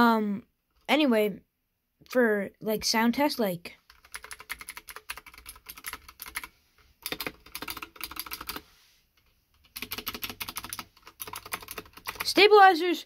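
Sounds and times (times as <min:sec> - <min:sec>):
typing on clicky mechanical keyboard: 0:03.9 - 0:08.6, 0:09.6 - 0:12.4.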